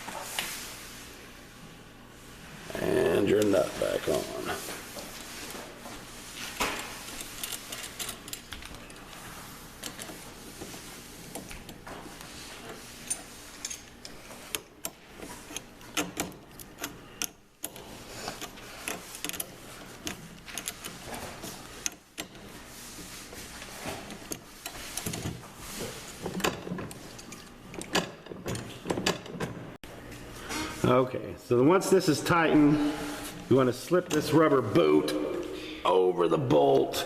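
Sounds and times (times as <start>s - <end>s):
tools tightening nut and bolt: 12.6s - 21.0s.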